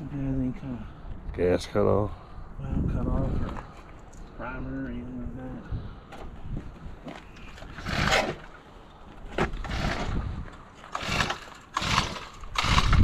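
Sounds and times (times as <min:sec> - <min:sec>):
engine pull-starter cranking: 0:07.7 - 0:08.5, 0:09.4 - 0:10.2, 0:10.8 - 0:13.0.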